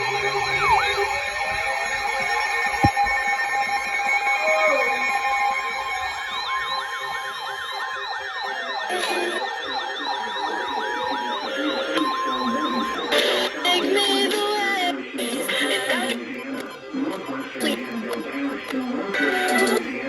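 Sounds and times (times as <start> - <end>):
alert data screech: 0.0 - 2.4, 6.4 - 14.4
electronic sirens yelping: 0.0 - 20.0
emergency alert beeps: 0.0 - 20.0.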